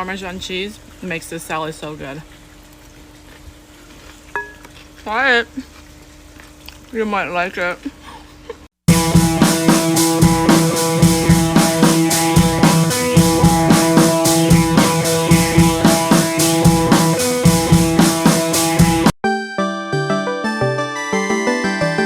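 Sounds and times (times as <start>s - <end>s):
driving drum beat: 8.9s - 19.2s
sustained guitar chords: 8.9s - 22.0s.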